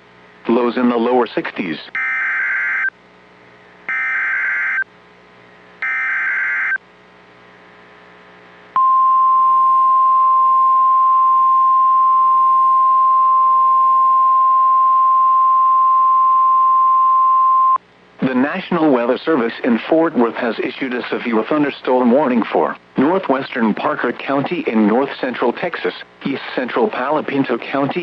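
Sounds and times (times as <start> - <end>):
steady alarm tone: 2.0 - 2.9, 3.9 - 4.8, 5.8 - 6.8.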